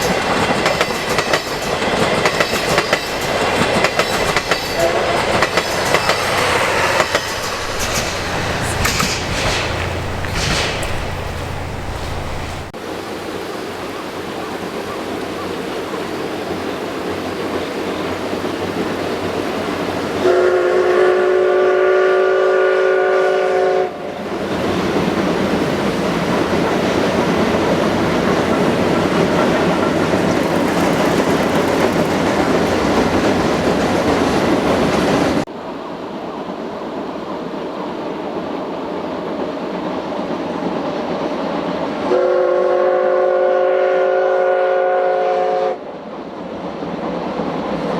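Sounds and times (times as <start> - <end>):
steam train running: 0.0 - 47.9
steam whistle chord: 20.2 - 23.9, 42.1 - 45.8.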